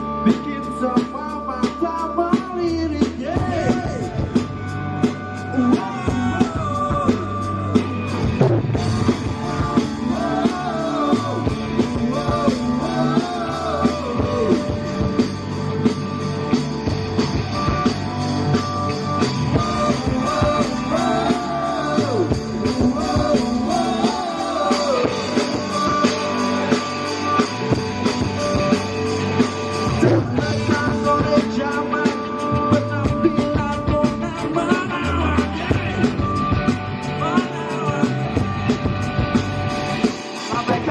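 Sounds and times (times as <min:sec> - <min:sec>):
rock band playing: 0:00.0 - 0:40.9
person singing: 0:05.2 - 0:15.6, 0:19.4 - 0:27.8, 0:29.9 - 0:38.7.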